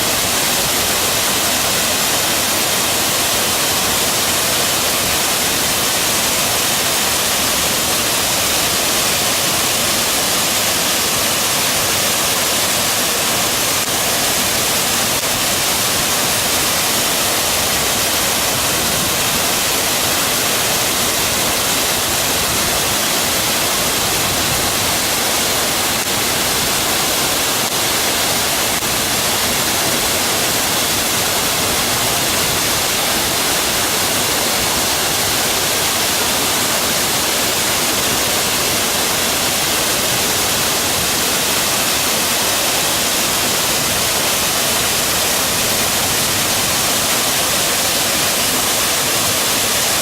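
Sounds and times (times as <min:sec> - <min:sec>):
waterfall rushing: 0:00.0 - 0:50.0.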